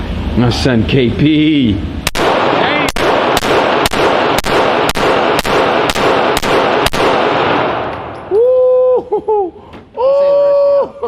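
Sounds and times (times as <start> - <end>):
rapid gunfire with echo: 2.1 - 7.9.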